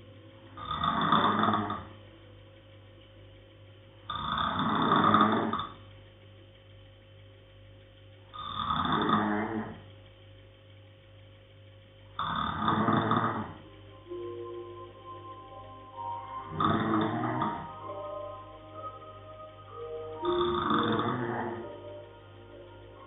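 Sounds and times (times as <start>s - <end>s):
slow snoring: 0.6s - 1.9s, 4.1s - 5.8s, 8.4s - 9.8s, 12.2s - 13.6s, 16.5s - 17.8s, 20.2s - 21.9s.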